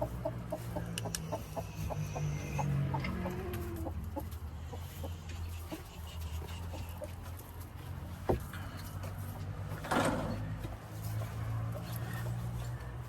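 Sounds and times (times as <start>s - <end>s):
hen clucking: 0.0s - 7.9s.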